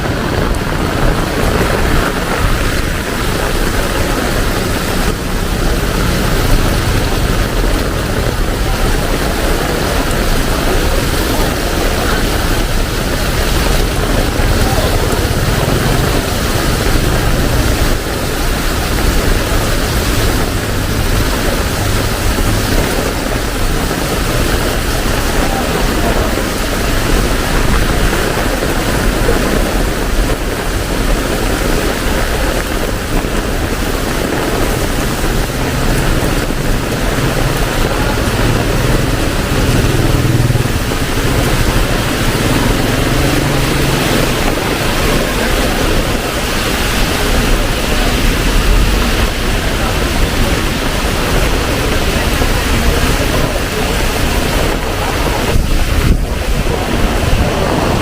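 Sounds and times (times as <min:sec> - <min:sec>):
heavy rain pouring: 0:00.0 - 0:58.0
vehicle engine hum: 0:00.0 - 0:58.0.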